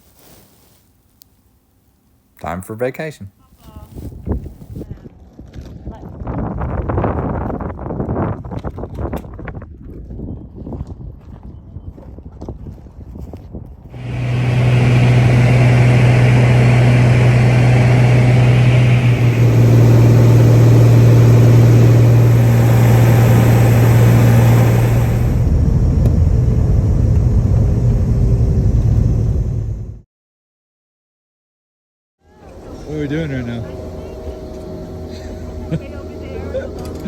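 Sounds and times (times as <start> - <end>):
engine droning steadily: 14.0 - 30.0, 32.3 - 37.0.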